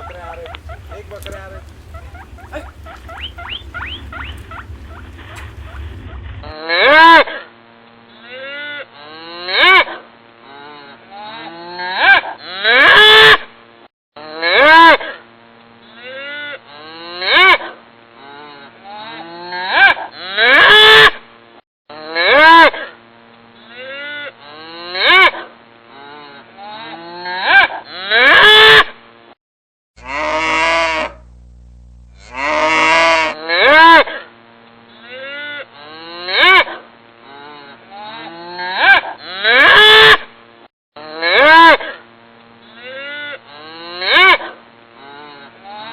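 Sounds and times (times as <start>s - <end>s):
cattle mooing: 0.0s - 7.0s, 18.2s - 20.7s, 30.0s - 31.3s, 32.1s - 34.0s, 35.0s - 40.0s, 42.8s - 45.9s.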